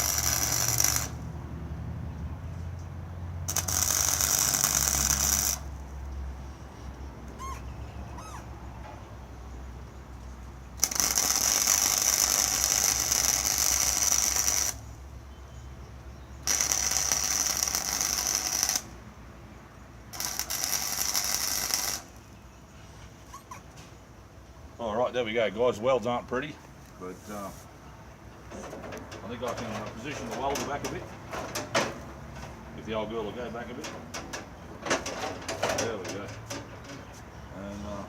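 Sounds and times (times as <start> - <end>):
arc welding crackling: 0.0 - 1.3, 3.5 - 5.8, 10.8 - 14.9, 16.4 - 19.0, 20.1 - 22.2.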